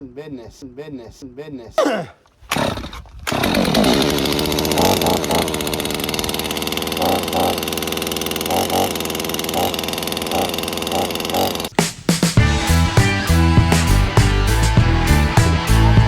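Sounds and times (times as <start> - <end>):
chainsaw running at high revs: 2.6 - 11.7, 12.4 - 16.0.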